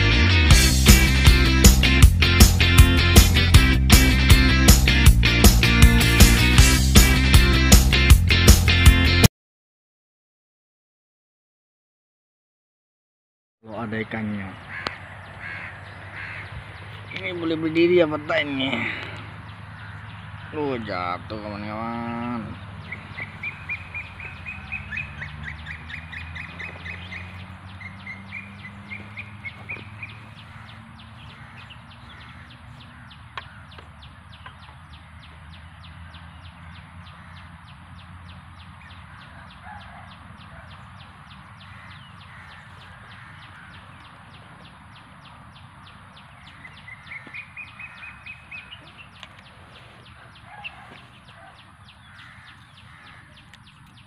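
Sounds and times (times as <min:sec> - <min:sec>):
birds chattering calls: 0:13.7 - 0:54.0.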